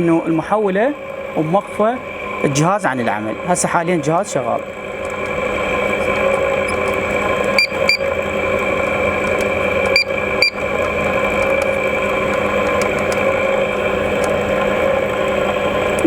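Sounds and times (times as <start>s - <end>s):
air conditioner humming: 0.0s - 16.0s
short electronic beeps: 7.6s - 8.0s.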